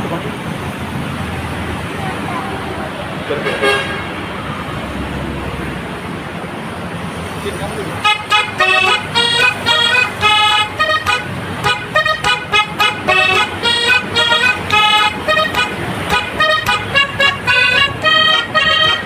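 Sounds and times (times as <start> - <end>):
multi-tone bus horn tune: 3.4 - 4.2, 8.0 - 19.0
low road rumble: 8.0 - 19.0.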